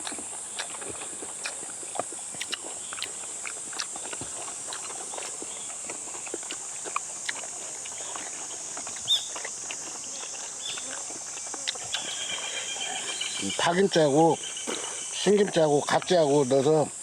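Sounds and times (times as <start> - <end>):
clicks and taps from eating: 0.0 - 12.1
insects chirping: 0.0 - 17.0.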